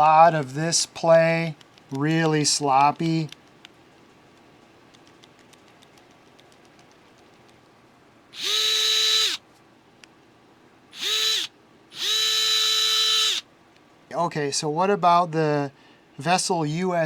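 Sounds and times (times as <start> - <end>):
electric screwdriver motor spinning: 8.4 - 9.4, 11.0 - 13.4.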